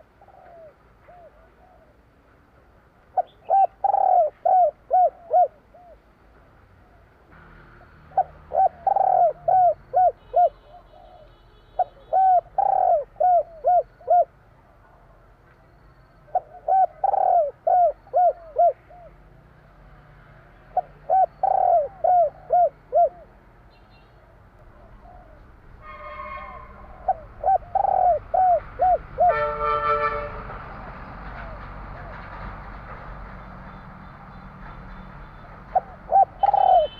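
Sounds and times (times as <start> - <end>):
dove cooing: 0.0 - 2.0, 3.2 - 6.0, 8.1 - 14.4, 16.3 - 19.3, 20.7 - 23.4, 24.6 - 25.6, 26.7 - 29.5, 35.7 - 36.9.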